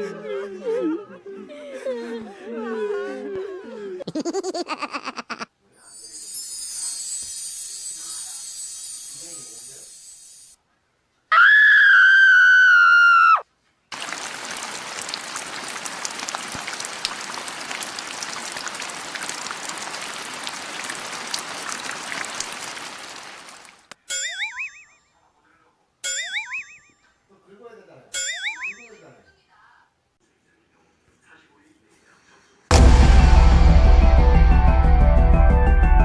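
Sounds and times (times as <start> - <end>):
high hiss: 6.0 - 10.5
crackling rushing noise: 14.0 - 23.9.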